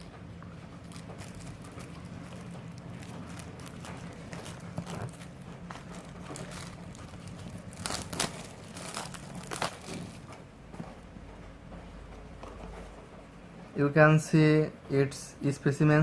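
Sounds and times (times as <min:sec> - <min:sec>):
packaging crinkling: 0:00.7 - 0:10.4.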